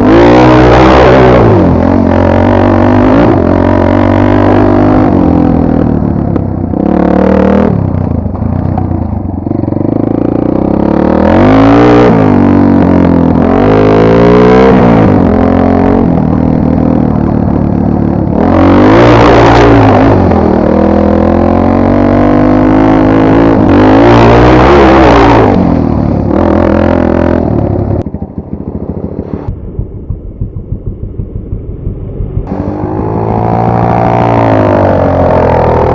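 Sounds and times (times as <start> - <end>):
dirt bike engine revving: 0.0 - 8.0, 9.5 - 29.5, 32.0 - 35.9
clatter: 4.2 - 10.8, 25.5 - 32.5.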